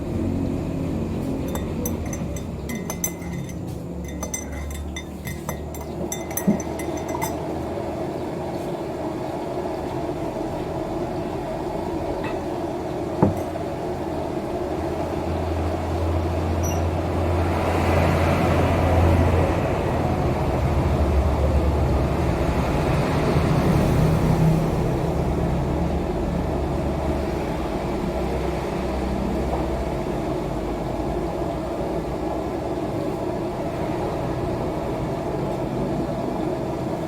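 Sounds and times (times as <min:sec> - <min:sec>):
low engine rumble: 0:00.0 - 0:23.4
ice and spoon clinking in glass: 0:01.4 - 0:07.5, 0:13.2 - 0:13.7, 0:16.6 - 0:16.9.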